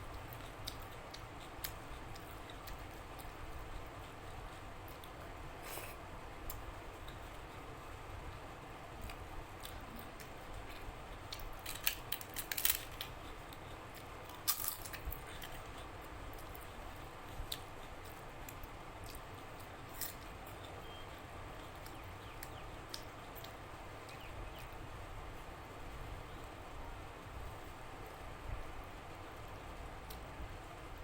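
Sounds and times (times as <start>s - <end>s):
chewing with wet mouth clicks: 0.1s - 5.2s, 9.0s - 24.7s.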